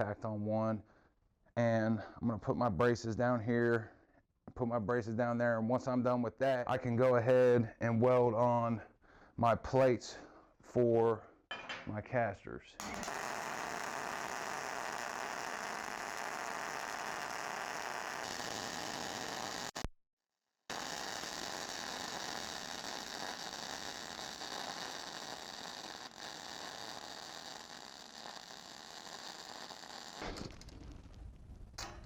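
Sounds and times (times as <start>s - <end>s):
welder hissing: 12.8s - 19.9s, 20.7s - 30.5s.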